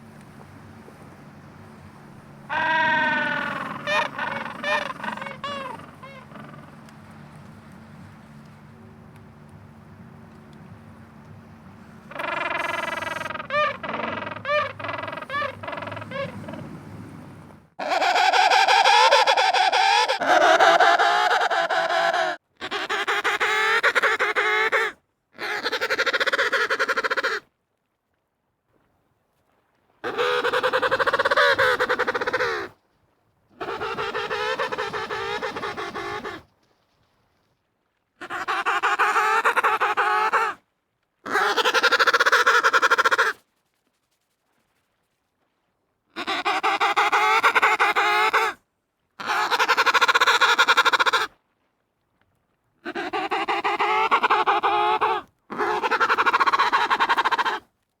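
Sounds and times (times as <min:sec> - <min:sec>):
harsh penguin calls: 0:02.5 - 0:06.7, 0:12.1 - 0:16.6, 0:17.8 - 0:27.4, 0:30.0 - 0:32.7, 0:33.6 - 0:36.4, 0:38.2 - 0:40.6, 0:41.3 - 0:43.4, 0:46.2 - 0:48.6, 0:49.2 - 0:51.3, 0:52.8 - 0:57.6
penguin buzzy pulsing call: 0:33.6 - 0:36.4, 0:52.9 - 0:57.6.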